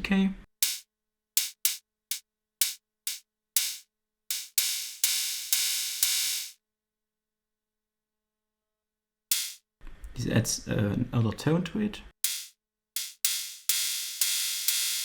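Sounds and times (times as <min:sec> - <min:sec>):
hissy drum machine cymbal hits: 0:00.6 - 0:06.6, 0:09.3 - 0:09.6, 0:12.2 - 0:15.0.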